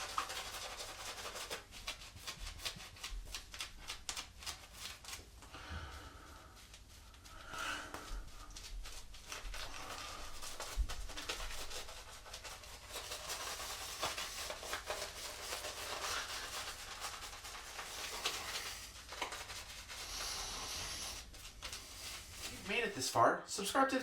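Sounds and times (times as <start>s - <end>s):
razor scratching on lathered skin: 0.0s - 5.0s, 9.0s - 22.9s.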